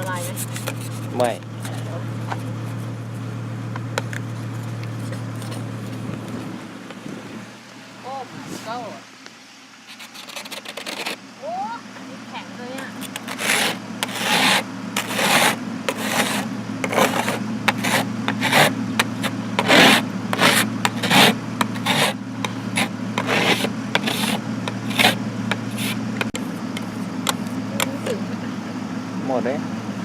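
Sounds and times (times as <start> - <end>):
ice being scraped: 0.0 - 2.9, 4.3 - 6.1, 9.9 - 11.2, 12.8 - 26.4
steady low hum: 0.0 - 30.0.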